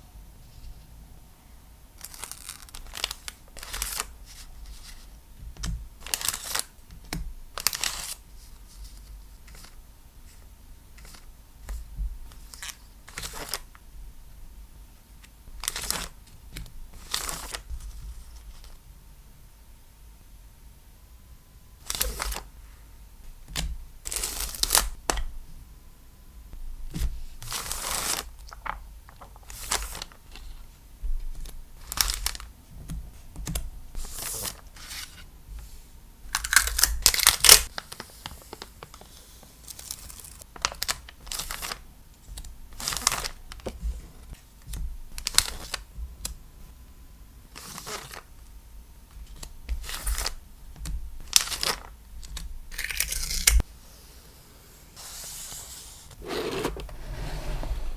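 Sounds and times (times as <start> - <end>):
packaging rustling and tearing: 2.0 - 4.1, 6.0 - 6.7, 27.5 - 30.2, 31.9 - 32.5, 36.4 - 38.0.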